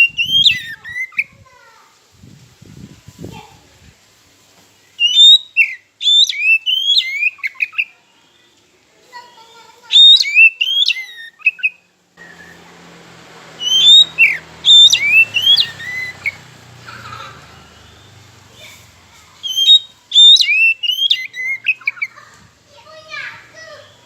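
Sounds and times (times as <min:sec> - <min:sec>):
bird singing whistled notes: 0:00.0 - 0:01.3, 0:04.8 - 0:08.6, 0:09.9 - 0:16.8, 0:17.5 - 0:18.7, 0:19.4 - 0:22.1.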